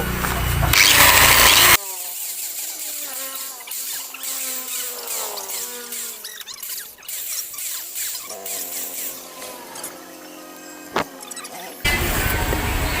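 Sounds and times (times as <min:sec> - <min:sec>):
workshop tool rushing noise: 0:00.3 - 0:10.1.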